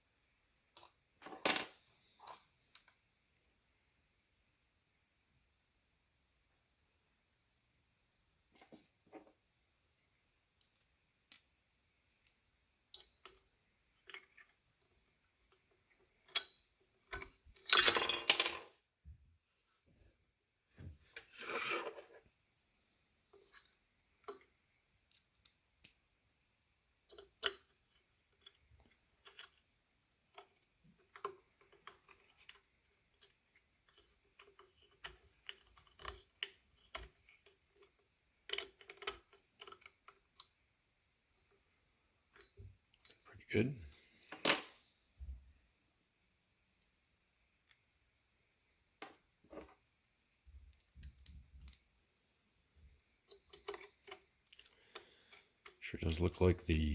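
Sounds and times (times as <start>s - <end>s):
metal tools and screws clinking: 17.6s - 18.6s.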